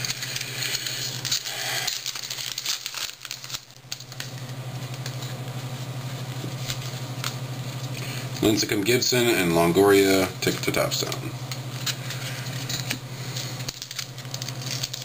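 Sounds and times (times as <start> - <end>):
trading cards flipped by hand: 0.0 - 8.5
steady low hum: 0.0 - 15.0.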